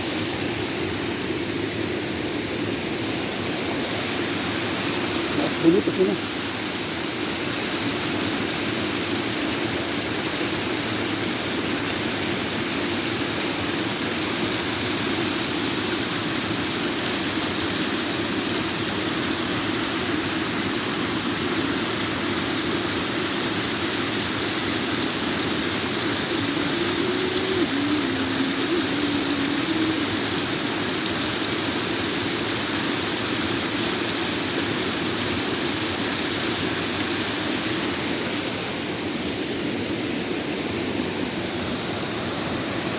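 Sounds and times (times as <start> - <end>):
waterfall roaring: 0.0 - 42.9
faint wavering tone: 25.5 - 31.0.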